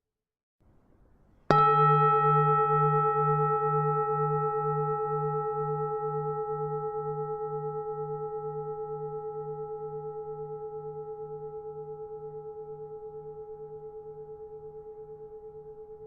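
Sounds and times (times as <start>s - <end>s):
temple bell ringing: 1.5s - 9.6s.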